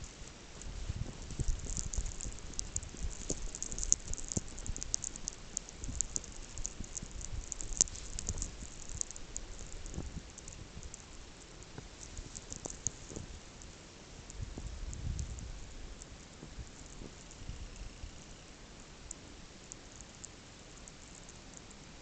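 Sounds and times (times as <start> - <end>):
snow crunching: 0.0 - 10.5.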